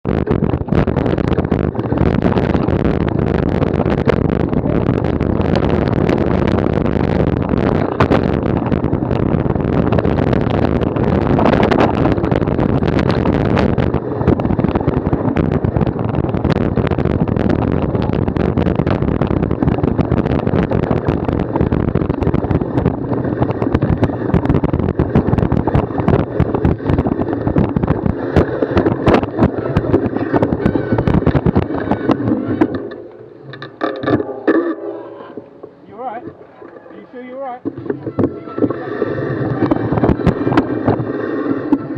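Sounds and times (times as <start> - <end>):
wind buffeting microphone: 0.0 - 41.9
bicycle rattling and knocking: 0.2 - 41.9.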